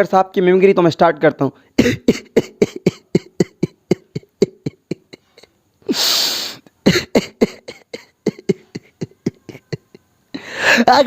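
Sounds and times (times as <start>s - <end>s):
beatboxing mouth beats: 2.0s - 5.5s
loud hiss: 5.8s - 6.7s.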